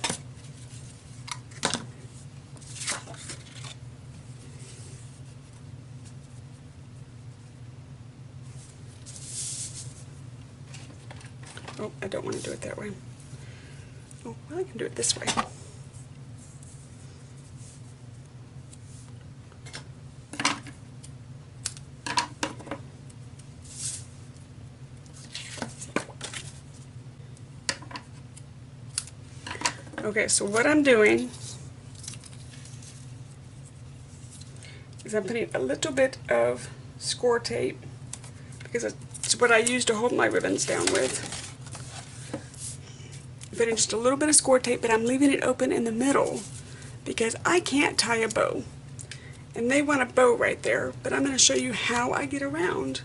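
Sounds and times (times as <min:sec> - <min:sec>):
paper rustling: 0:02.6 - 0:03.8, 0:25.1 - 0:26.8, 0:31.2 - 0:34.5, 0:39.1 - 0:42.8.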